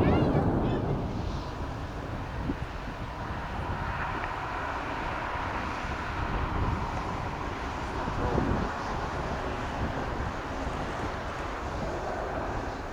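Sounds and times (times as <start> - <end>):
jet engines whining: 0.0 - 3.3
wind buffeting microphone: 0.0 - 12.9.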